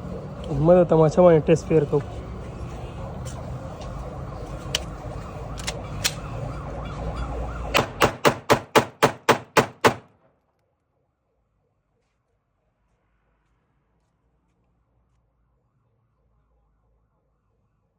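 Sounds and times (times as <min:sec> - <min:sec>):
pistol fired rapidly: 0:07.8 - 0:10.1.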